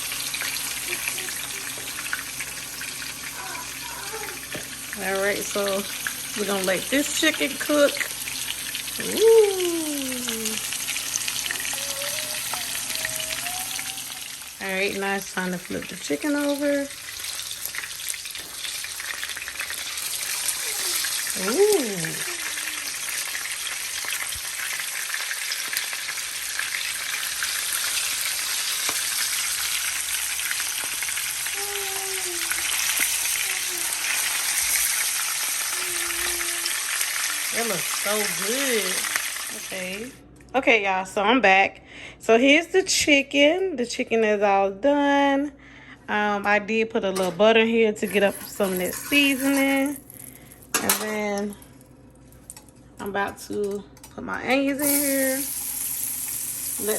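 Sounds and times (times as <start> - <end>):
chicken sizzling in oil: 0.0 - 40.1, 54.8 - 56.9.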